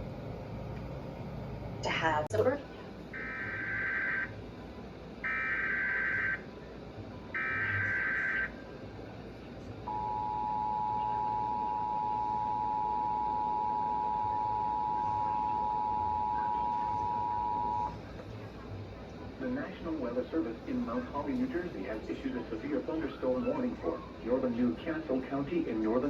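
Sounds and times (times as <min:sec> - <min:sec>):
two-tone attention signal: 0:09.9 - 0:17.9.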